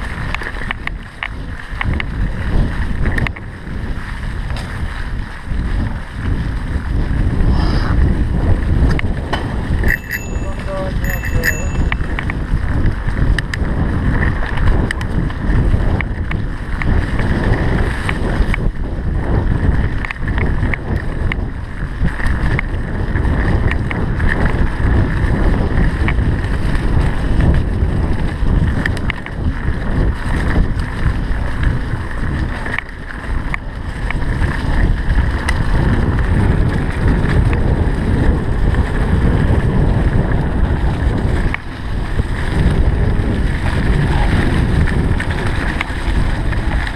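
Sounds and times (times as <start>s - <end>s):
bike clicks and rattles: 0.0s - 46.9s
wind buffeting microphone: 0.0s - 46.9s
tyres rumbling on dirt: 11.2s - 46.9s.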